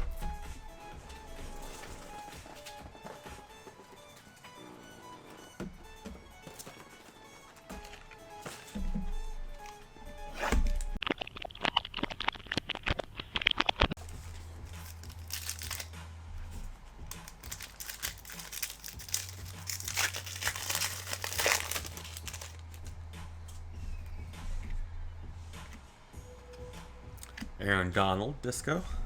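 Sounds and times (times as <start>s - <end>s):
foil wrappers crinkling and ripping: 10.5s - 15.9s, 16.5s - 22.9s.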